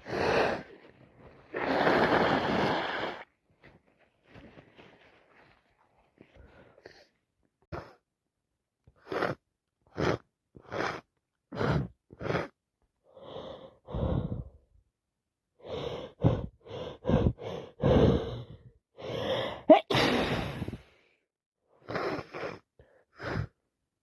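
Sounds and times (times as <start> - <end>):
person gasping breaths: 0.0 - 3.3, 6.2 - 7.2, 13.0 - 14.7, 15.6 - 21.2
person sneezing: 19.6 - 20.8.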